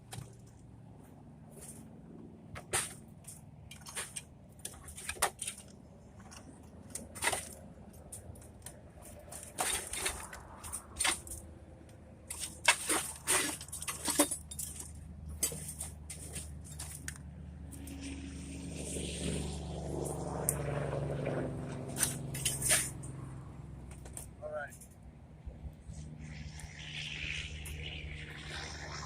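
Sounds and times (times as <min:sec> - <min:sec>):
tools clicking and scraping: 0:02.5 - 0:18.1, 0:21.9 - 0:23.2.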